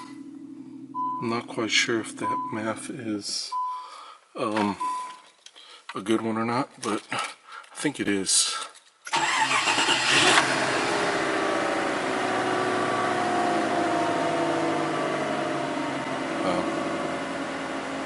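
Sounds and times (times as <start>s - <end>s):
car engine idling: 0.0s - 3.6s, 9.2s - 18.0s.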